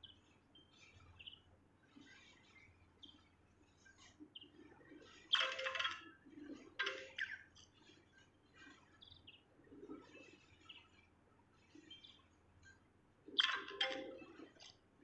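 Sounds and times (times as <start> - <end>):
soft bird chirps: 0.0 - 14.7
songbird singing: 5.3 - 6.2.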